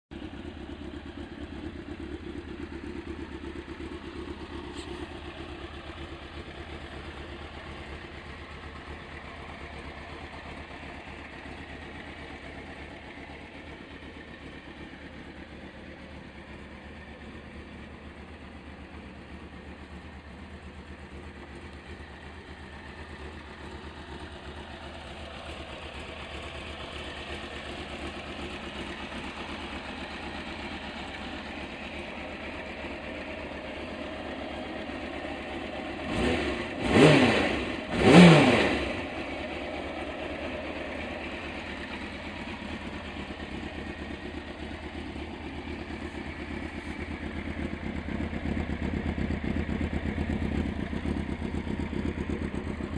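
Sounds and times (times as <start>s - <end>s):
motorcycle engine idling and revving: 0.0s - 52.9s.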